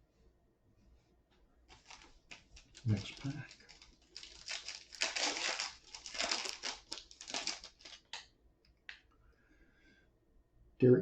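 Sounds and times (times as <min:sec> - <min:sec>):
foil wrapper tearing and crinkling: 0:01.7 - 0:08.2.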